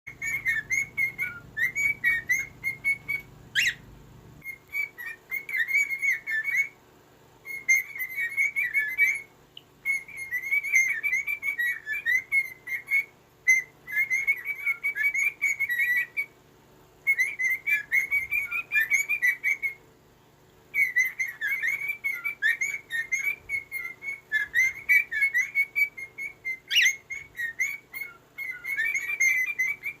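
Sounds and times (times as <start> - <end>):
small bird warbling song: 0.1 - 6.8, 7.4 - 16.4, 17.0 - 30.0.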